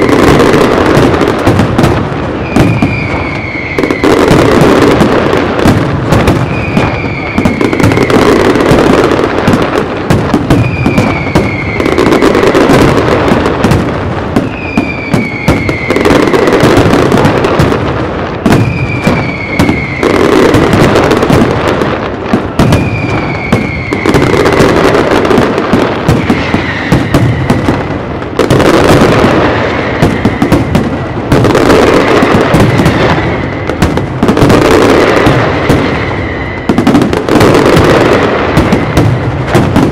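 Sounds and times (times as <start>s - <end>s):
fireworks bangs and crackling: 0.0s - 39.9s
falling whistle: 2.4s - 4.3s, 6.5s - 8.3s, 10.6s - 12.3s, 14.5s - 16.3s, 18.6s - 20.3s, 22.7s - 24.5s, 26.2s - 27.6s, 35.8s - 36.8s.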